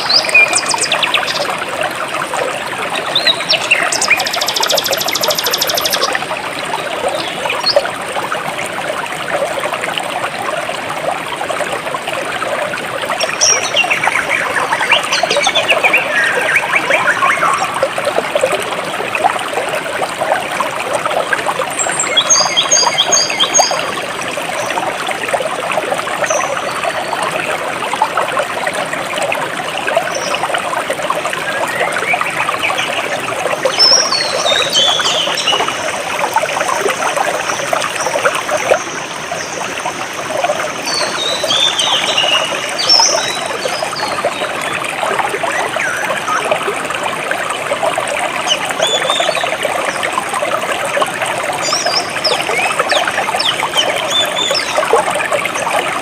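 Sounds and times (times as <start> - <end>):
stream babbling over rocks: 0.0 - 56.0
bird chirping: 3.1 - 6.1.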